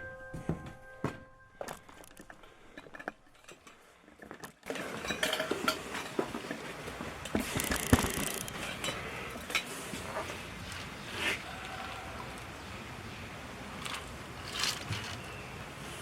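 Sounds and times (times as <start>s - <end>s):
metal parts and tools clinking: 1.6s - 9.7s.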